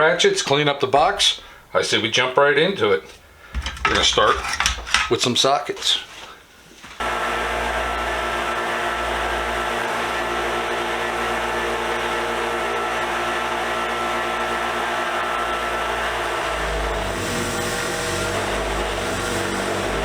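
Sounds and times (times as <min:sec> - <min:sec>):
electric wire wheel running: 0:07.0 - 0:20.0.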